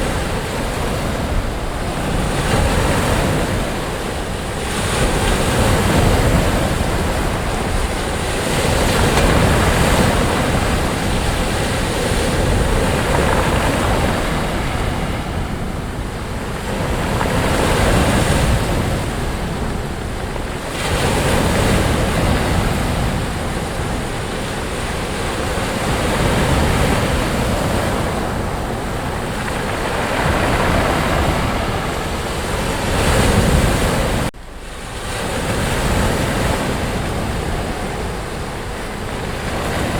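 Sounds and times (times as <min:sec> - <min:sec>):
ocean waves on sandy beach: 0:00.0 - 0:39.9.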